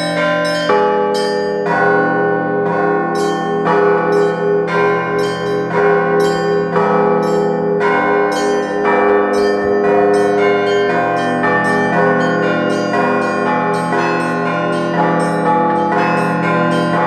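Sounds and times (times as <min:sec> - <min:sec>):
large church bells ringing: 0:00.0 - 0:17.0
small church bells ringing: 0:00.0 - 0:17.0.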